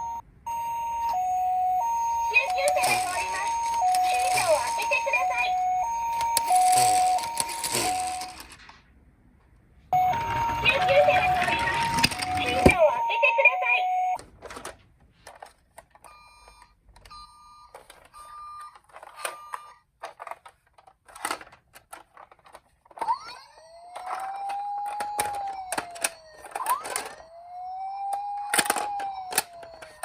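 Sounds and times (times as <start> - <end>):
toy siren: 0.0 - 8.5, 10.0 - 14.2, 16.1 - 19.8, 22.9 - 30.0.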